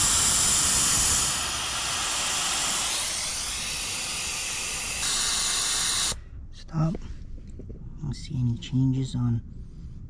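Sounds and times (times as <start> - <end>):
air hissing from tyre valve: 0.0 - 6.2.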